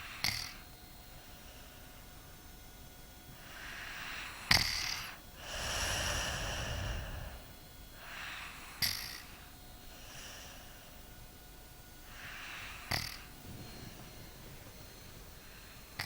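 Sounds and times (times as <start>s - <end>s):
child snoring: 0.0s - 0.6s, 3.4s - 10.7s, 12.1s - 16.0s.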